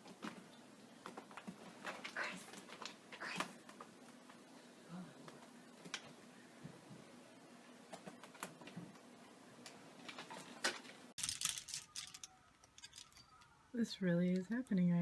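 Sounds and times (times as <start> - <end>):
faint room noise: 0.0 - 15.0.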